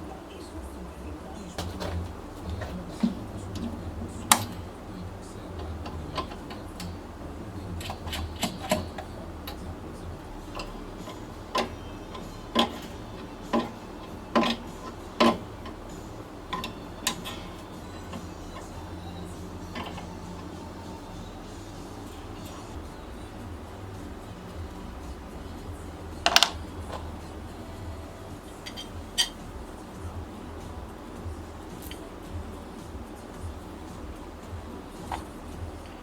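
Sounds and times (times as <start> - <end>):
low steady hum: 0.0 - 36.0
sharp clicks and knocks: 1.5 - 22.8, 26.2 - 27.4.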